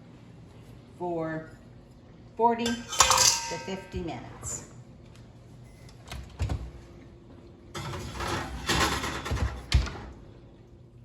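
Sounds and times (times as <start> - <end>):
oven rack clattering: 2.6 - 4.0, 7.8 - 10.2.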